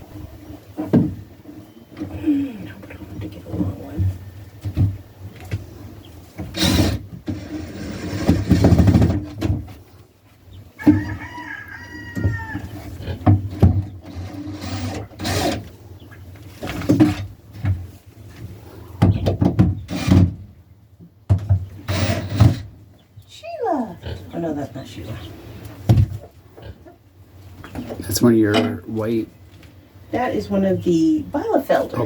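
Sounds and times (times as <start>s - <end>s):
chickens calling: 9.7s - 16.8s, 21.6s - 29.2s.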